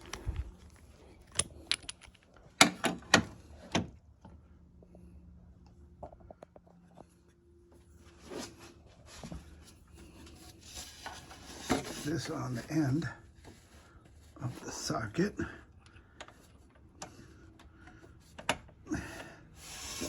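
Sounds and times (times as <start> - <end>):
hand tools clicking and knocking: 1.3 - 3.0.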